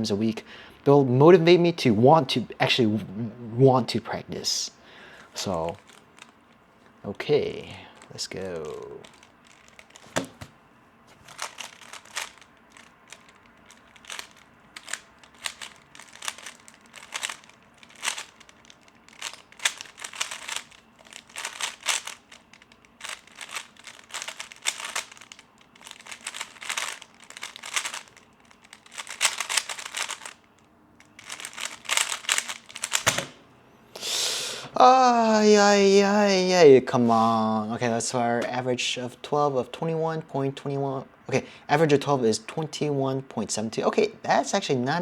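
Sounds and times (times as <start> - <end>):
puzzle cube plastic clicks: 5.5 - 6.4, 8.0 - 10.5, 11.2 - 33.4.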